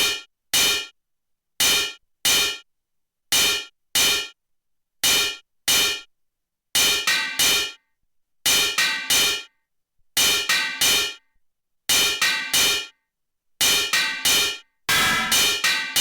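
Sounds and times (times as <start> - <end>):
sharp metallic clang: 14.9 - 15.6.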